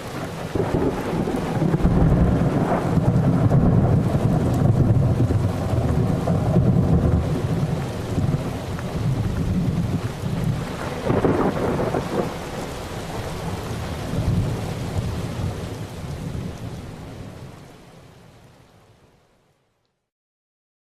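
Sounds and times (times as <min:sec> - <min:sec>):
steady rain: 0:00.0 - 0:20.0
rolling thunder: 0:00.4 - 0:16.6.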